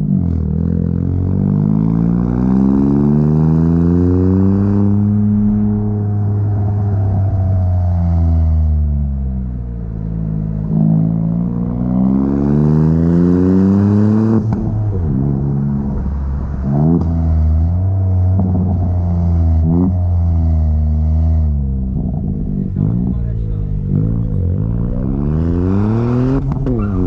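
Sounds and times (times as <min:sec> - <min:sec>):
car engine accelerating: 0:00.0 - 0:27.0
engine throttle blips: 0:04.3 - 0:12.4.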